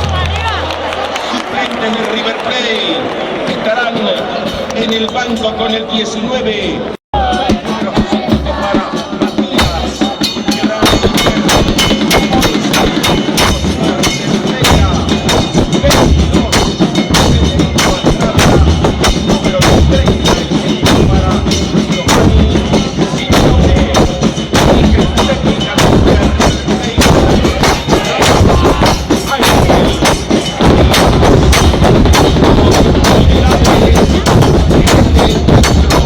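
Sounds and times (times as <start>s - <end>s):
bass drums pounding: 7.2s - 36.0s.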